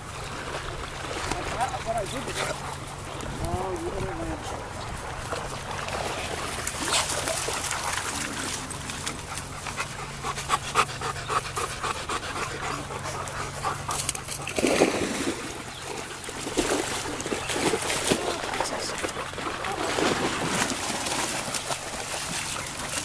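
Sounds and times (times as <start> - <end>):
dog panting: 1.8 - 3.2, 6.8 - 14.6.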